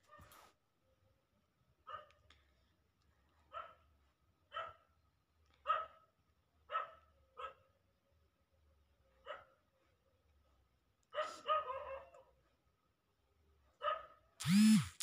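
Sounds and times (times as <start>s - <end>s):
dog barking: 1.8s - 2.2s, 3.5s - 3.8s, 4.5s - 4.9s, 5.6s - 6.1s, 6.7s - 7.7s, 9.2s - 9.7s, 11.1s - 12.3s, 13.8s - 14.2s.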